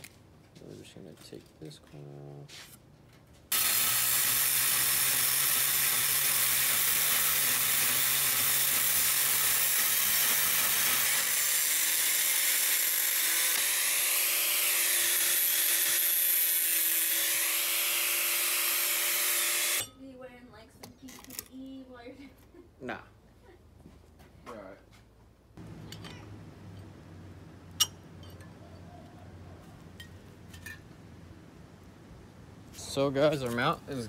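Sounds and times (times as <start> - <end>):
angle grinder cutting steel: 3.5 - 19.9.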